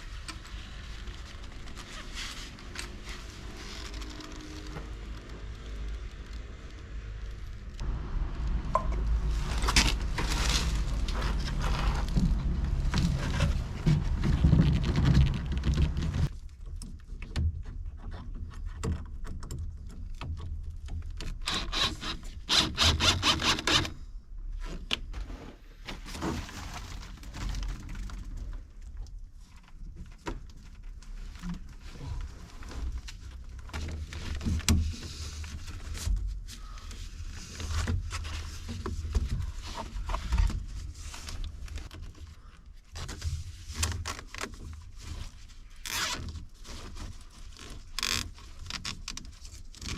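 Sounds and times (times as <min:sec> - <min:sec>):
objects scraping and knocking: 0:08.6 - 0:16.3
rasping scrape: 0:09.3 - 0:16.3.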